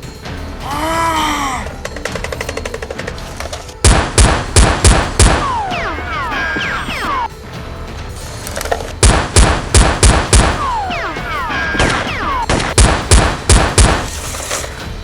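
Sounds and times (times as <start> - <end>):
background music: 0.0 - 15.0
gunshot bursts: 3.8 - 7.3, 9.0 - 14.3.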